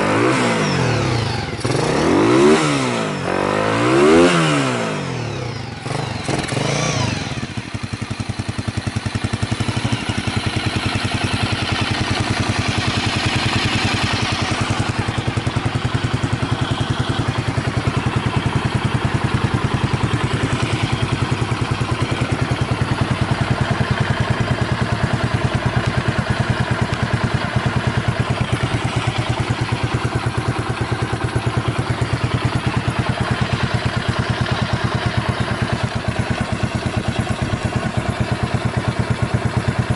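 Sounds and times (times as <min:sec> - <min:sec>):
engine rev blip: 0:00.0 - 0:07.6
motorcycle engine idling: 0:00.0 - 0:39.9.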